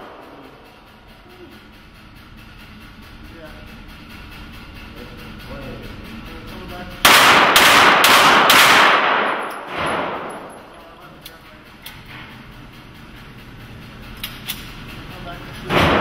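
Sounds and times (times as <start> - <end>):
handgun shots: 7.1 - 10.5.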